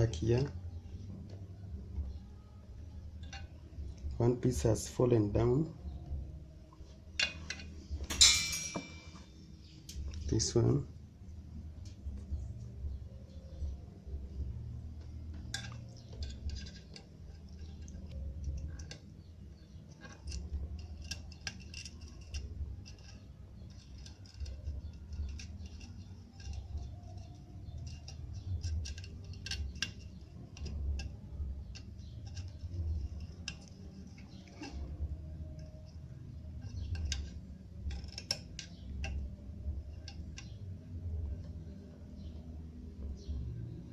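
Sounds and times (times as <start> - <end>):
hand tools clicking and tapping: 7.2 - 10.3, 15.0 - 42.4.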